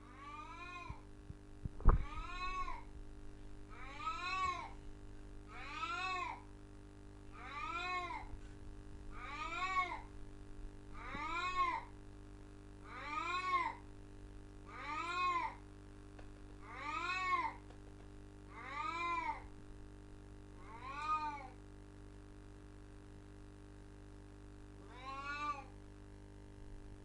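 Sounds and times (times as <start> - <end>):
cat meowing: 2.0 - 2.8, 3.7 - 4.7, 5.5 - 6.4, 7.4 - 8.2, 9.2 - 10.0, 11.0 - 11.8, 12.9 - 13.7, 14.7 - 15.5, 16.6 - 17.5, 18.5 - 19.4, 20.6 - 21.6, 24.9 - 25.7.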